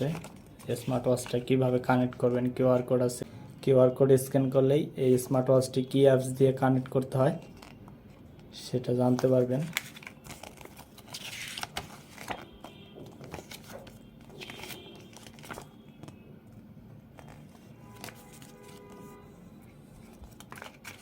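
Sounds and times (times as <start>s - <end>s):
cardboard and plastic handling: 9.1s - 16.2s, 17.1s - 19.2s, 19.8s - 21.0s.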